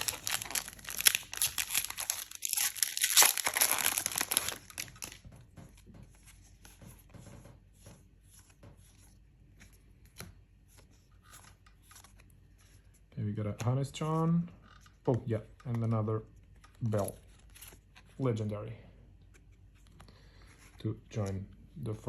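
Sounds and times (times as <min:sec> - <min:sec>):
wrapper tearing and crinkling: 0:00.0 - 0:05.2
cards rustling: 0:00.0 - 0:05.3, 0:08.3 - 0:14.3.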